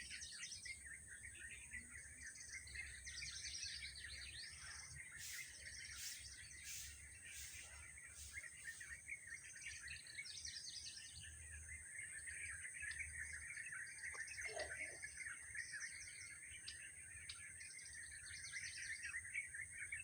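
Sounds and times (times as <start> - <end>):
small birds chirping and twittering: 0.0 - 20.0
steady high-pitched hiss: 5.0 - 9.1.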